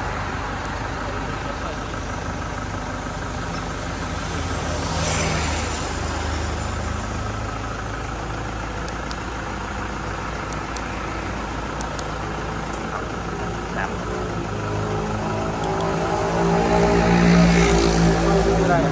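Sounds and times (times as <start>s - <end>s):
traffic passing by: 0.0s - 18.9s
vehicle engine running: 0.0s - 18.9s
faint clicks: 11.7s - 13.0s.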